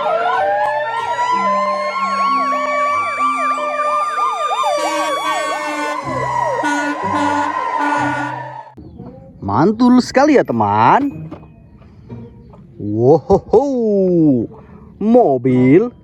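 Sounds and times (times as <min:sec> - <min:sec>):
ambulance siren yelping: 0:00.0 - 0:08.8
background music: 0:00.0 - 0:16.0.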